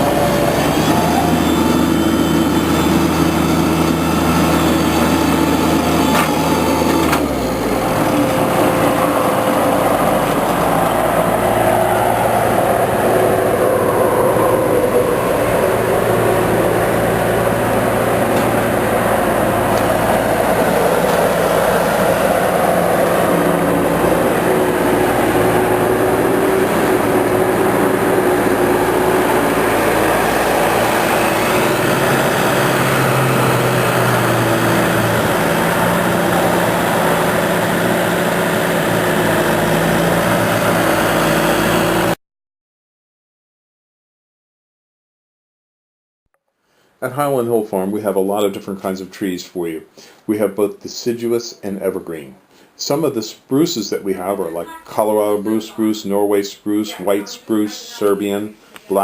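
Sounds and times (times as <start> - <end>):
engine running: 0.0 - 42.2.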